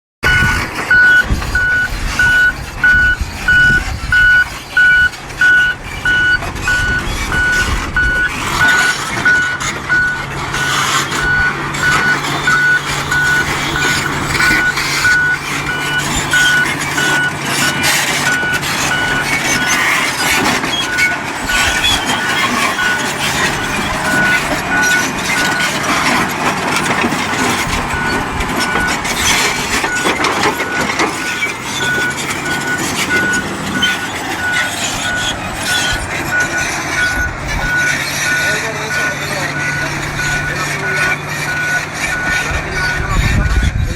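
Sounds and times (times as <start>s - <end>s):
diesel engine running: 0.2s - 43.9s
reversing alarm beeping: 0.2s - 43.9s
rough mechanical noise: 0.2s - 43.9s.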